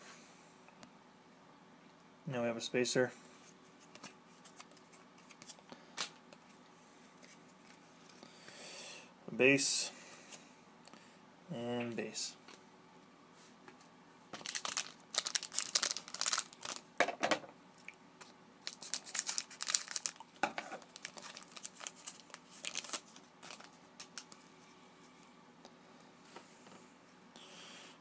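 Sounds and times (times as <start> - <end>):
card pack wrapper tearing and crinkling: 14.4 - 16.9, 18.6 - 24.4.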